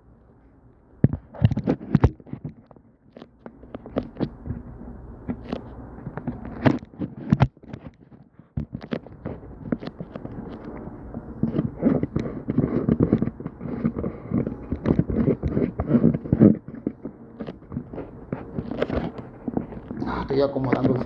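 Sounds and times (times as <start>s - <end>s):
objects handled clicks and scrapes: 5.3s - 21.0s.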